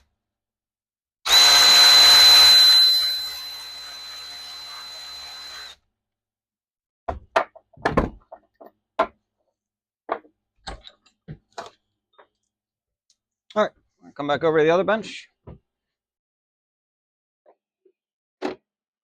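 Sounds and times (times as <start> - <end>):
power tool humming: 1.3 - 5.8.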